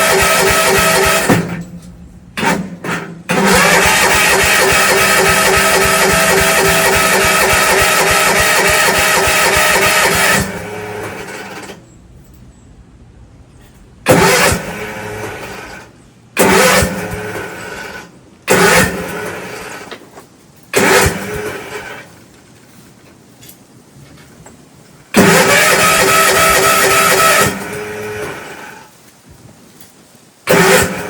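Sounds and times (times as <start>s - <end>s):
tractor engine cranking: 0.0s - 12.5s, 13.6s - 22.2s, 25.1s - 28.9s, 30.5s - 31.0s
steady pitched tone: 3.6s - 10.8s.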